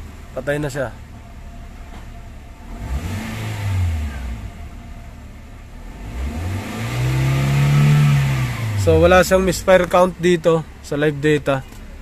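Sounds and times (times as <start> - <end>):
car engine revving: 1.8 - 10.5.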